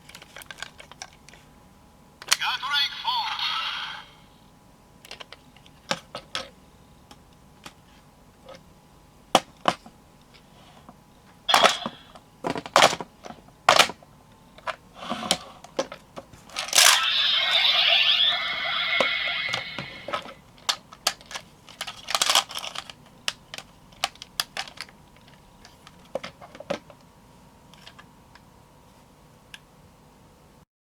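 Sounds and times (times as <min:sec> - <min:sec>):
electronic toy sound effect: 0:02.3 - 0:04.2, 0:11.5 - 0:12.2, 0:16.7 - 0:20.3
plastic toy clicks and snaps: 0:19.5 - 0:24.9.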